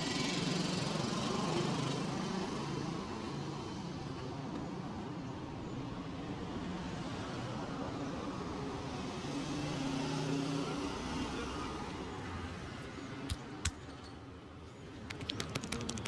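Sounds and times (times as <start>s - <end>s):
street traffic noise: 0.0s - 16.0s
sharp clicks: 15.1s - 16.0s.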